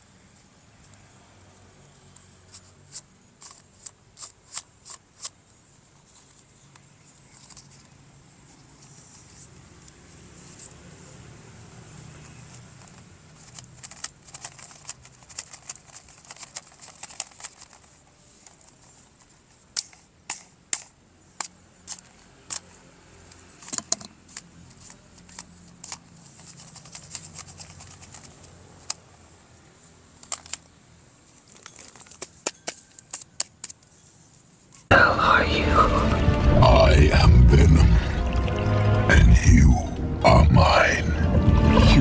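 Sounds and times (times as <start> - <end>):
toy parts clicking and rattling: 2.5 - 5.4, 12.3 - 22.7, 23.5 - 29.1, 30.2 - 30.7, 31.3 - 34.0.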